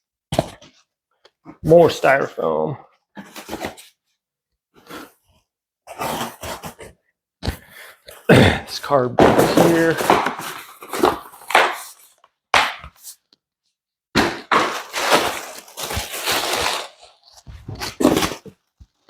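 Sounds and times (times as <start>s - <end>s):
cardboard crunching and scraping: 5.9s - 6.9s, 9.2s - 12.2s, 14.2s - 18.7s.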